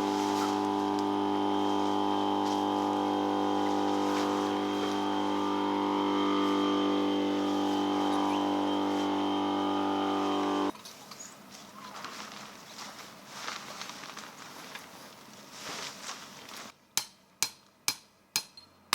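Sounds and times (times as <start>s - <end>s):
vehicle engine running: 0.0s - 10.7s
faint rustling: 11.0s - 16.8s.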